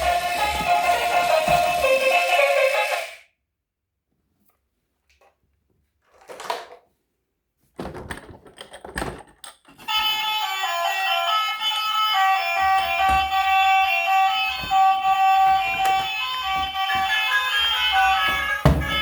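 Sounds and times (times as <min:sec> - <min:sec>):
background music: 0:00.0 - 0:03.2.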